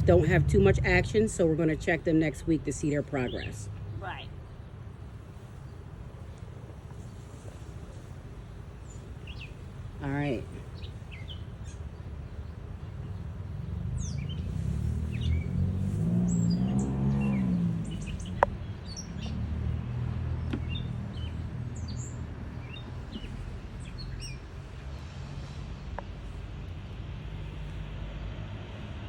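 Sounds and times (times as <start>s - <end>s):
low steady hum: 0.0s - 16.0s
small birds chirping: 0.0s - 25.2s.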